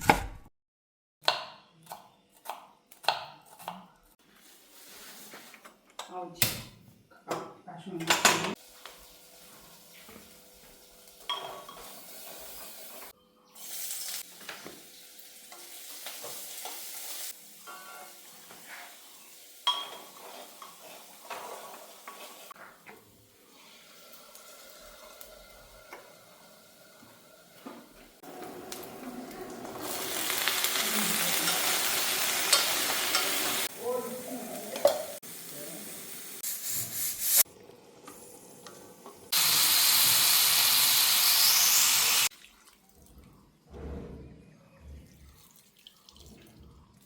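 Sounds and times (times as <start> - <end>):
food sizzling in pan: 8.6 - 37.5, 38.1 - 42.3
utensil stirring and scraping pan: 19.8 - 22.7.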